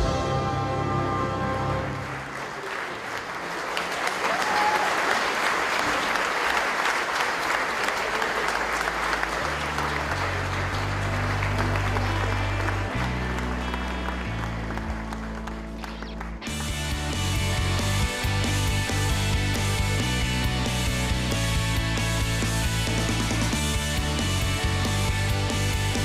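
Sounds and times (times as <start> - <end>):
crowd applauding: 1.4 - 26.0
background music with bass: 9.2 - 26.0.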